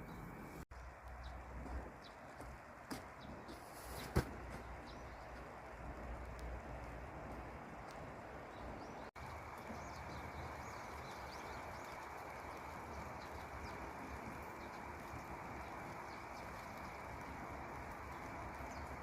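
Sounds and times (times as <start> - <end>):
small birds chirping: 0.0 - 19.0
stream flowing: 4.7 - 19.0.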